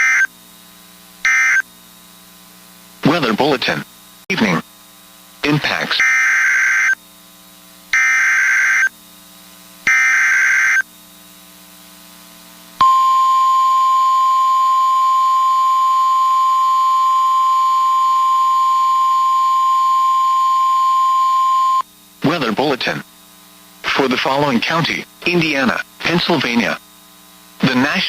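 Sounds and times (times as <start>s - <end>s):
buzzing digital data bursts: 0.0s - 0.3s, 1.2s - 1.7s, 5.4s - 7.0s, 7.9s - 9.0s, 9.8s - 10.9s, 12.8s - 21.9s
steady warning alarm tone: 0.0s - 0.3s, 1.2s - 1.6s, 6.0s - 7.0s, 7.9s - 8.9s, 9.9s - 10.9s, 12.8s - 21.8s.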